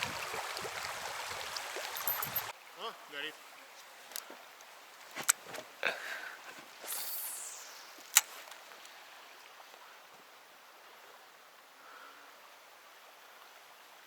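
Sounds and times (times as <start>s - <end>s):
fishing rod handling clicks: 4.1s - 5.4s, 6.8s - 9.0s
lure and line whooshing out: 6.6s - 9.1s
sharp click: 6.9s - 8.9s.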